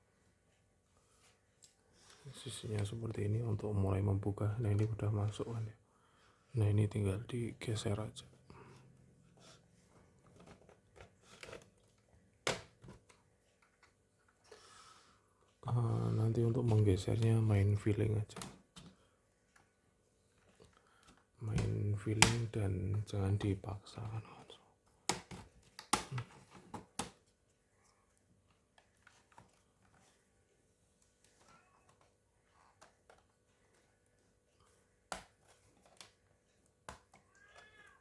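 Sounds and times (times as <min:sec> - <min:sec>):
plastic clicks and scrapes: 0:10.2 - 0:14.4.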